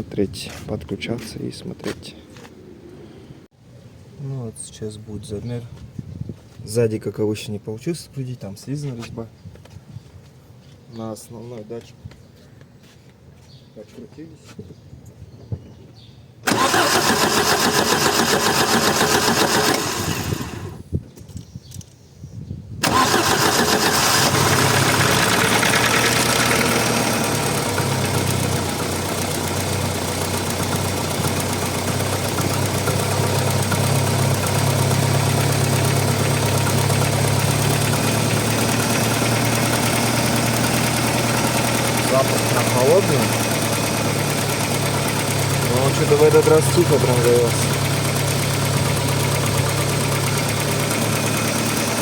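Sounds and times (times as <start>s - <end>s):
car engine cold starting and idling: 16.4s - 20.8s, 22.8s - 52.0s.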